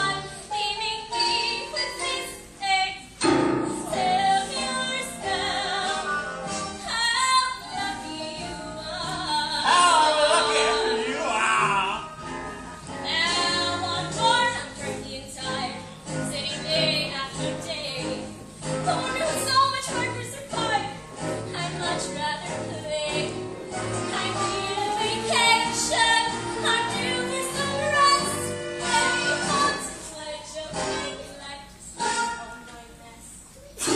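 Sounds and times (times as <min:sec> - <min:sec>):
woman singing: 0:00.0 - 0:03.2, 0:03.8 - 0:11.3, 0:13.0 - 0:23.4, 0:24.0 - 0:33.4
instrumental accompaniment: 0:03.2 - 0:30.0.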